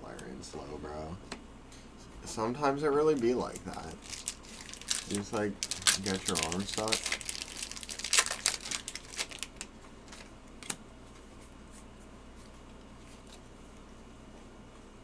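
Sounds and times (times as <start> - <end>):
faint steady hum: 0.0 - 15.0
foil pack and cards crinkling: 3.0 - 10.8.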